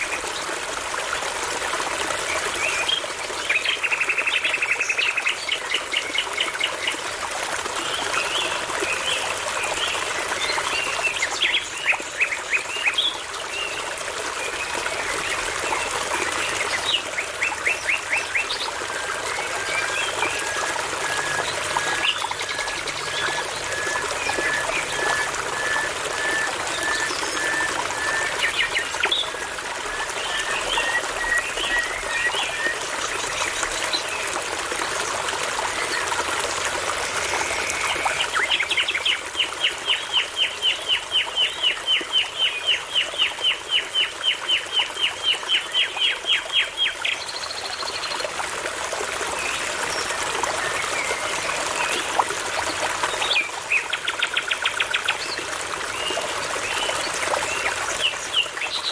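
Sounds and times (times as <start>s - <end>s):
babbling brook: 0.0s - 58.9s
songbirds singing: 7.9s - 34.3s.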